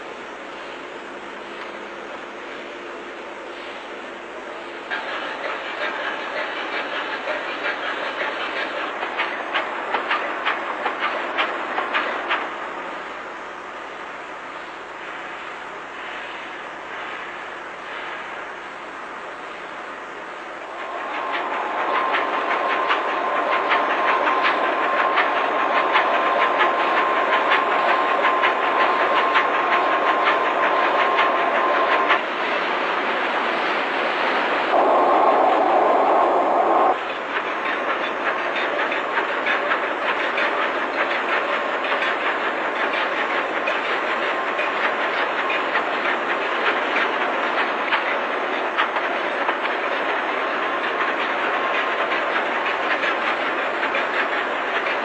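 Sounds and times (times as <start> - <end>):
steady engine whine: 18.4 - 38.2
loud rushing noise: 34.4 - 37.1.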